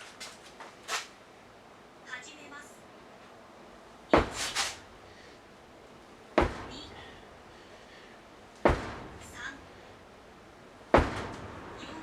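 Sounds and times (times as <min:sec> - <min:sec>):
sledgehammer strikes: 0:04.1 - 0:04.8, 0:06.4 - 0:07.2, 0:08.6 - 0:09.5, 0:10.9 - 0:11.7.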